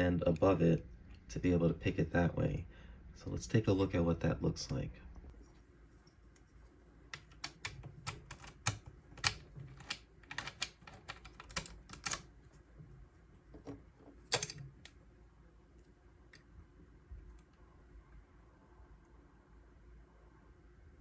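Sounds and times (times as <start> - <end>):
lock pick metal clicks: 7.2 - 12.3, 14.3 - 15.0.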